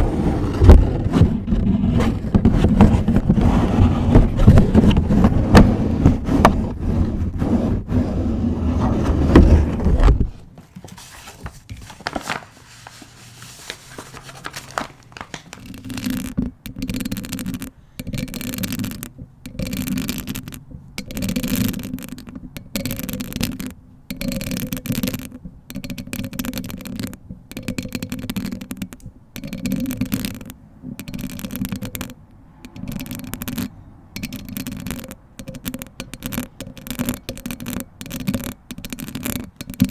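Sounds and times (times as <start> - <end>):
nails scratching on microphone: 0.0 - 10.5, 15.6 - 39.9
paper bag rustling: 8.6 - 15.8.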